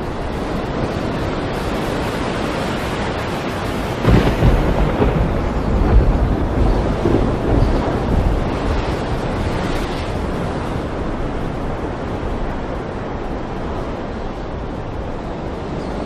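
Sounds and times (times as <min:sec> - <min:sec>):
waves surging: 0:00.0 - 0:16.0
low rumble of thunder: 0:04.0 - 0:12.7.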